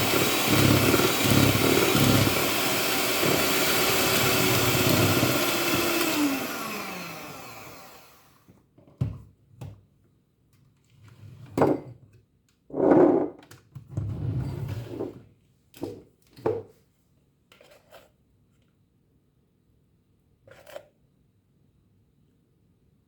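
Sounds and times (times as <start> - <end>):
electric mixer beating: 0.0 - 8.4.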